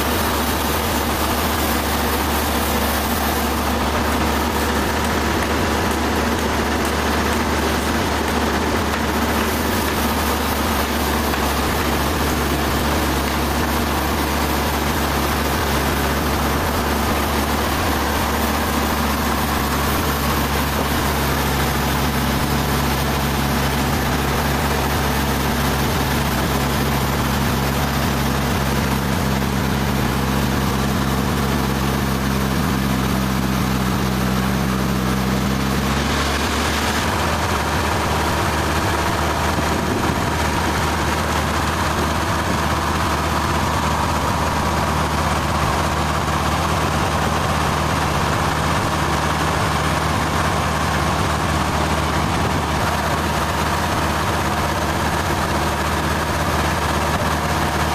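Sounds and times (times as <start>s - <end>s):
sawmill machinery running: 0.0s - 57.9s.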